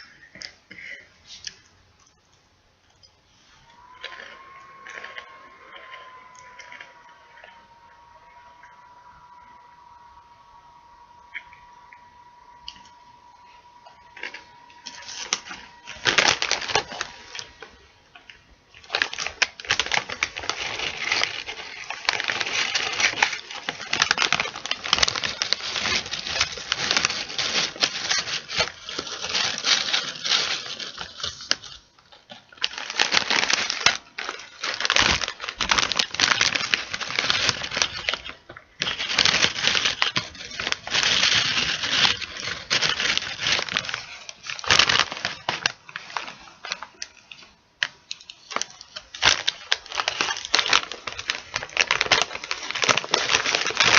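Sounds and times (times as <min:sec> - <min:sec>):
chip bag crinkling: 0:00.0 - 0:53.9.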